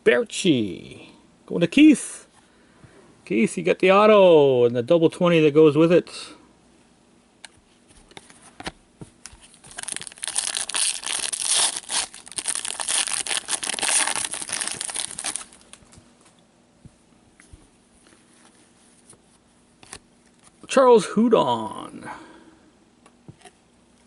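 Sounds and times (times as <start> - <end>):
foil wrapper tearing and crinkling: 9.6 - 15.8.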